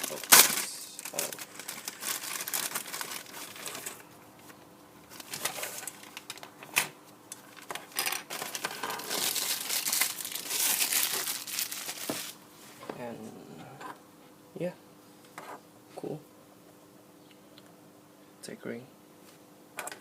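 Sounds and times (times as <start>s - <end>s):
packaging crinkling and rustling: 0.0s - 4.1s, 5.1s - 6.6s, 7.4s - 12.4s.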